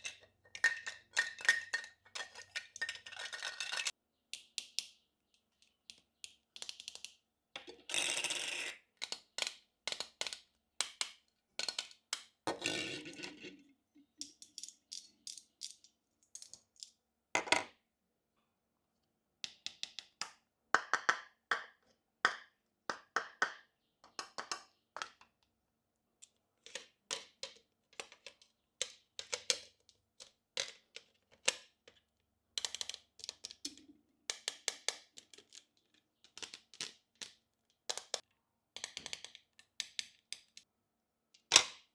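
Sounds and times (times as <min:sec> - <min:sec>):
plastic toy pieces clicking: 0:26.7 - 0:31.8, 0:32.6 - 0:38.2, 0:38.8 - 0:40.6.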